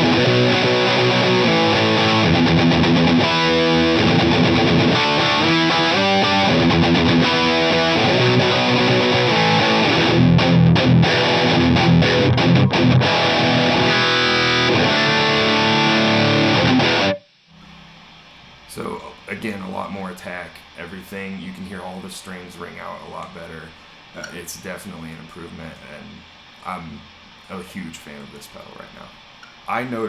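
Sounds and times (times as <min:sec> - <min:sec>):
distorted electric guitar riff: 0:00.0 - 0:17.2.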